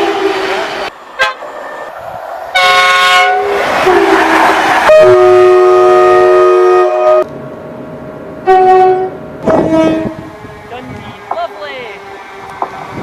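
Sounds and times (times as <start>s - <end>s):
train horn blasts: 0.0s - 1.4s, 2.5s - 7.3s, 8.4s - 11.0s.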